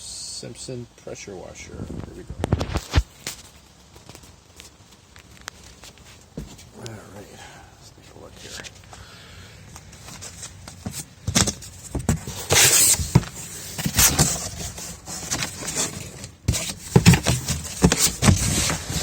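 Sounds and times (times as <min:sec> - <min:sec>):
cardboard tearing and scraping: 0:10.0 - 0:19.0.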